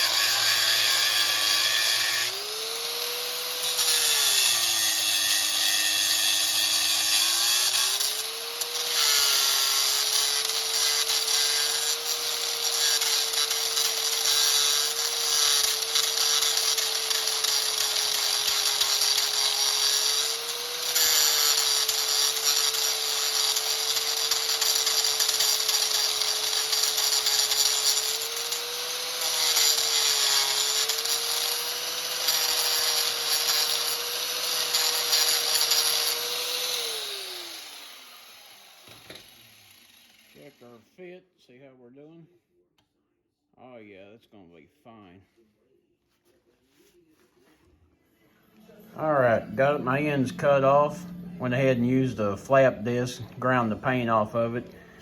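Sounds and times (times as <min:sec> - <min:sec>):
angle grinder cutting steel: 0:00.0 - 0:40.6, 0:48.6 - 0:55.0.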